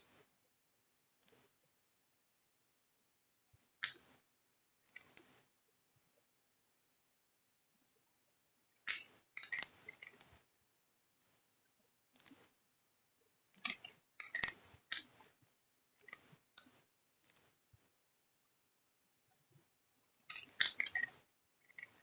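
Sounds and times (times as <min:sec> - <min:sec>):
plastic toy parts clicking: 0:08.8 - 0:10.4, 0:13.5 - 0:15.2, 0:20.2 - 0:22.0.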